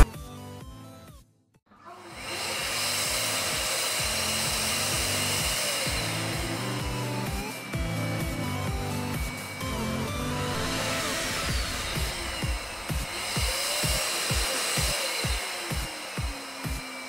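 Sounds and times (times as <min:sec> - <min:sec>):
electronic music: 0:06.5 - 0:14.0.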